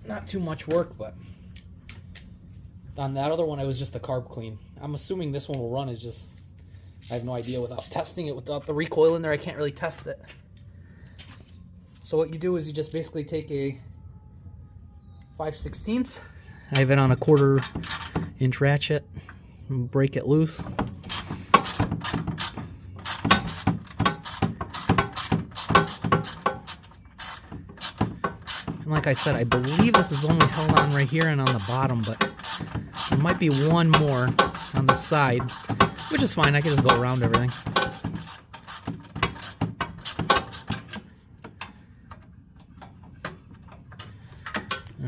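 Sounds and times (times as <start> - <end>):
ratchet clicking: 17.6 - 18.2, 21.0 - 41.0.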